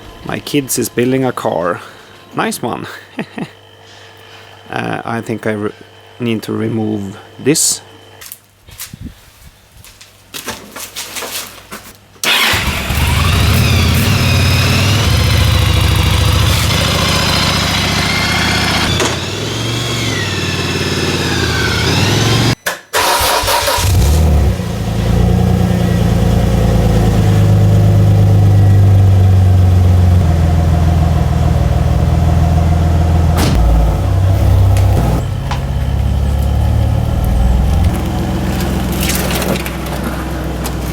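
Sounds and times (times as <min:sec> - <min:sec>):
car engine revving: 0:12.2 - 0:40.9.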